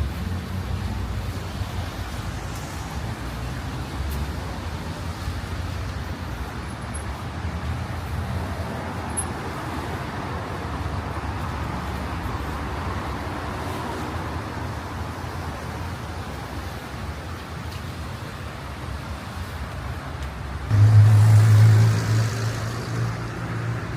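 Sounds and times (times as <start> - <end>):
road traffic rumble: 0.0 - 23.9
vehicle passing: 20.7 - 23.9.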